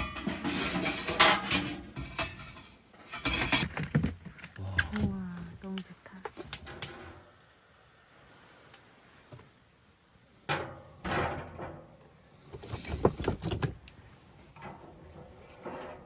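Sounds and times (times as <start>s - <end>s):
scrape or rustle: 0.0s - 5.4s, 11.0s - 16.0s.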